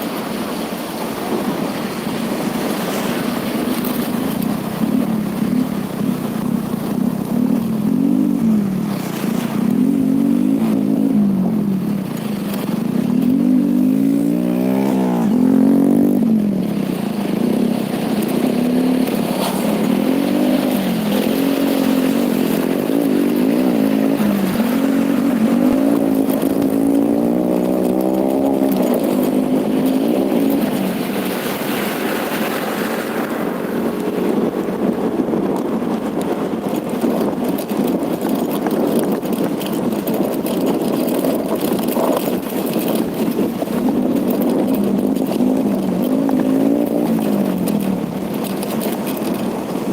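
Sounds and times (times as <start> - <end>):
motorcycle engine revving: 4.7 - 36.4, 41.6 - 49.4
rough noisy rush: 6.2 - 36.9.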